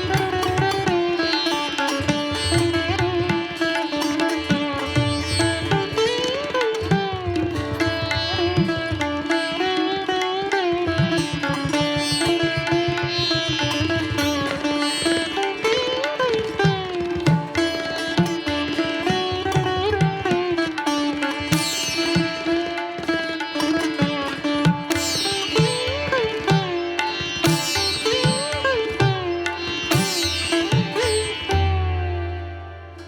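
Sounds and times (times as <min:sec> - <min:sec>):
plucked string melody: 0:00.0 - 0:33.0.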